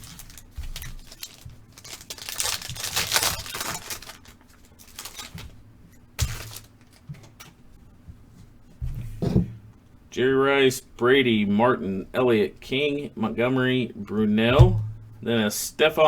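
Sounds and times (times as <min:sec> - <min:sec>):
plastic wrapping tearing and crinkling: 0:00.0 - 0:05.6, 0:06.2 - 0:07.1.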